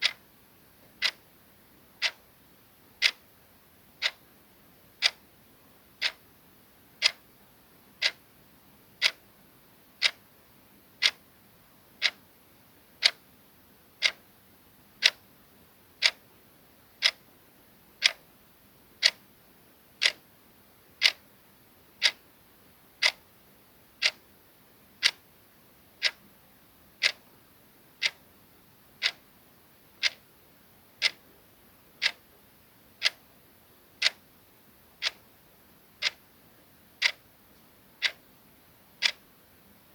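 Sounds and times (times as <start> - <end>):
clock ticking: 1.0 - 1.2, 2.0 - 2.2, 3.0 - 3.2, 4.0 - 4.2, 5.0 - 5.2, 6.0 - 6.2, 7.0 - 7.2, 8.0 - 8.2, 9.0 - 9.2, 10.0 - 10.2, 11.0 - 11.2, 12.0 - 12.2, 13.0 - 13.2, 14.0 - 14.2, 15.0 - 15.2, 16.0 - 16.2, 17.0 - 17.2, 18.0 - 18.2, 19.0 - 19.2, 20.0 - 20.2, 21.0 - 21.2, 22.0 - 22.2, 23.0 - 23.2, 24.0 - 24.2, 25.0 - 25.2, 26.0 - 26.2, 27.0 - 27.2, 28.0 - 28.2, 29.0 - 29.2, 30.0 - 30.2, 31.0 - 31.2, 32.0 - 32.2, 33.0 - 33.2, 34.0 - 34.2, 35.0 - 35.2, 36.0 - 36.2, 37.0 - 37.2, 38.0 - 38.2, 39.0 - 39.2.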